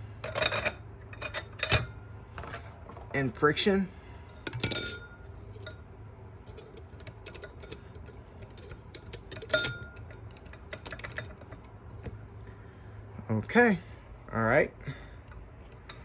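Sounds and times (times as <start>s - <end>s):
metal clutch plates clinking: 0.2s - 2.0s, 4.3s - 5.8s, 6.4s - 11.8s, 15.3s - 16.0s.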